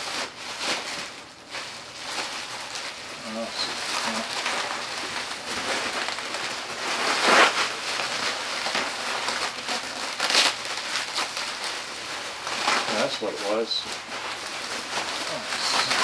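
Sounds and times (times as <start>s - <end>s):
cardboard crinkling and rustling: 0.0s - 16.0s
packing tape being pulled: 0.0s - 16.0s.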